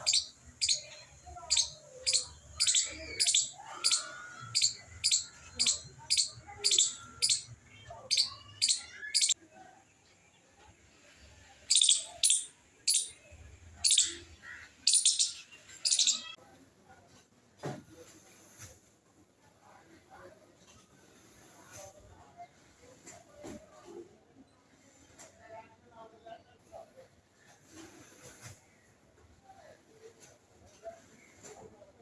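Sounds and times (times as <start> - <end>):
small animal chirping: 0.0 - 9.4, 11.7 - 13.2, 13.8 - 14.3, 14.9 - 16.4.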